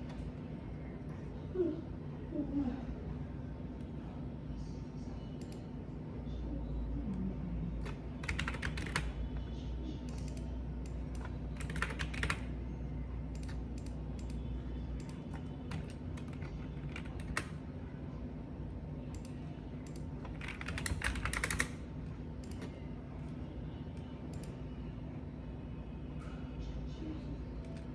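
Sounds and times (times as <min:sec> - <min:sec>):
low steady hum: 0:00.0 - 0:27.9
typing on computer keyboard: 0:07.8 - 0:09.2, 0:10.1 - 0:12.5, 0:13.3 - 0:14.4, 0:15.0 - 0:17.6, 0:19.1 - 0:21.8, 0:22.4 - 0:22.8.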